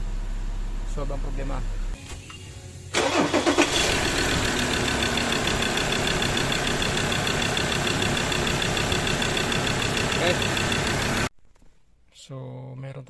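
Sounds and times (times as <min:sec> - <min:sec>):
diesel engine idling: 0:02.7 - 0:11.3.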